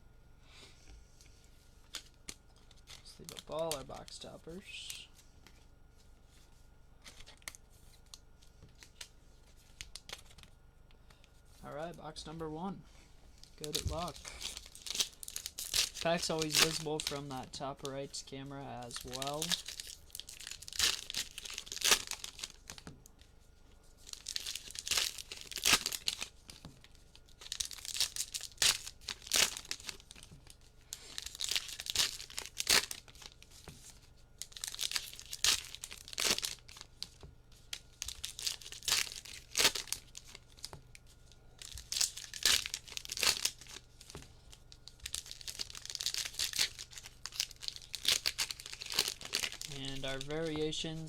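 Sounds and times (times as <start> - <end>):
foil packs tearing and crinkling: 13.6 - 22.9, 24.0 - 40.8, 41.6 - 51.0.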